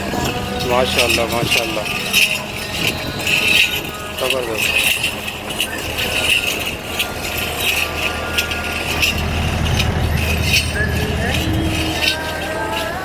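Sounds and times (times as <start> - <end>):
low engine-like rumble: 0.0 - 13.0
metallic jingling and clinking: 0.0 - 13.0.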